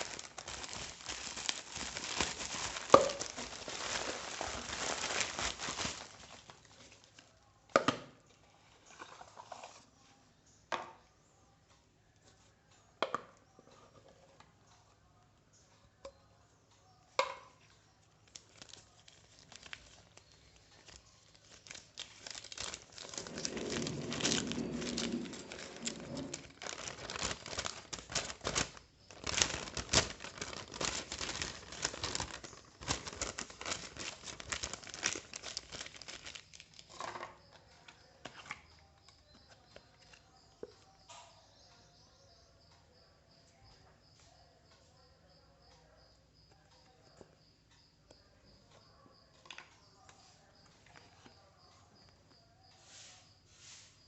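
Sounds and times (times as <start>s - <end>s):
packaging tearing: 0.0s - 6.6s, 20.9s - 36.9s
wrapping crinkling and rustling: 0.0s - 7.4s, 18.2s - 40.4s.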